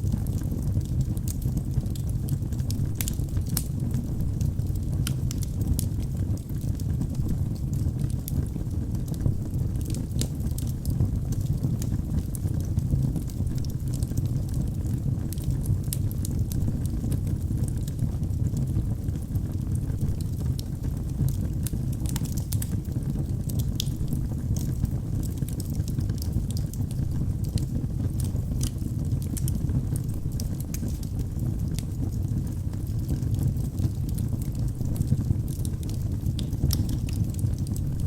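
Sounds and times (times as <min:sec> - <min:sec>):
fire flames rumbling: 0:00.0 - 0:38.0
wood crackling: 0:32.5 - 0:38.0.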